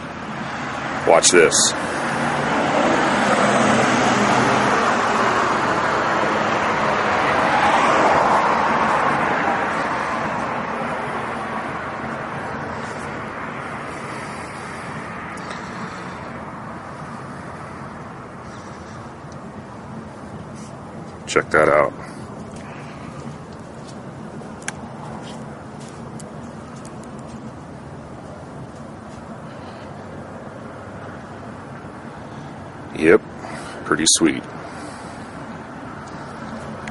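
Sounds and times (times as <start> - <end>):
vehicle driving by: 0.0 - 20.7.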